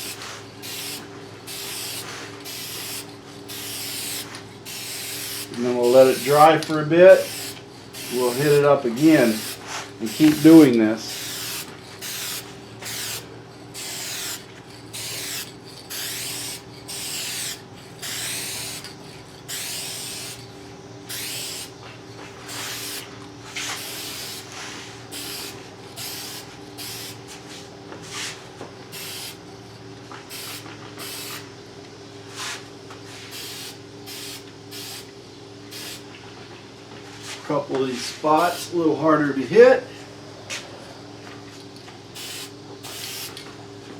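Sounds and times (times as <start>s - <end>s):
aerosol can spraying: 0.0s - 20.5s, 21.1s - 29.4s, 30.2s - 31.5s, 32.3s - 35.1s, 35.7s - 36.0s, 38.3s - 38.7s, 42.2s - 43.4s.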